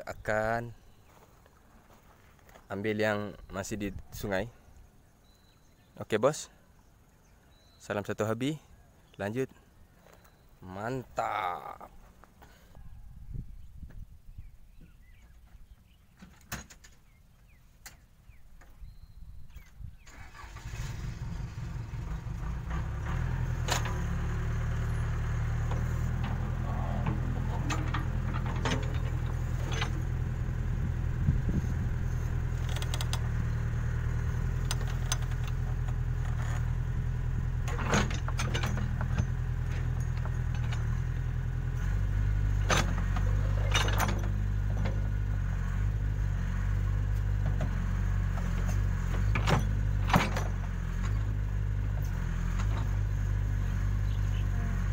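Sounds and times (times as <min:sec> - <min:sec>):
diesel engine running: 0:20.0 - 0:54.9
metallic clanks and rattles: 0:21.9 - 0:45.4, 0:47.4 - 0:53.0.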